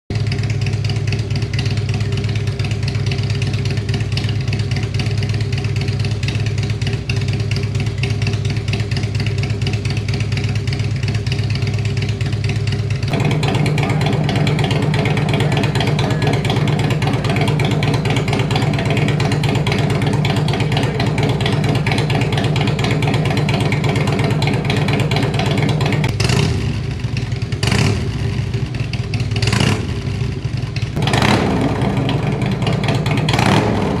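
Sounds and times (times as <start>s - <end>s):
motorcycle engine idling: 0.1s - 34.0s
motorcycle engine revving: 0.1s - 34.0s.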